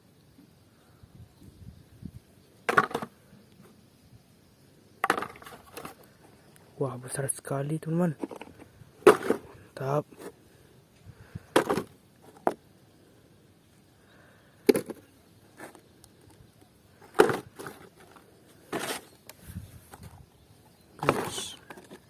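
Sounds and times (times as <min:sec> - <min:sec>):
plastic toys knocking and clattering: 0:02.7 - 0:03.1, 0:05.0 - 0:06.0, 0:08.1 - 0:09.6, 0:11.5 - 0:12.6, 0:14.6 - 0:15.8, 0:17.0 - 0:19.0, 0:21.0 - 0:22.0.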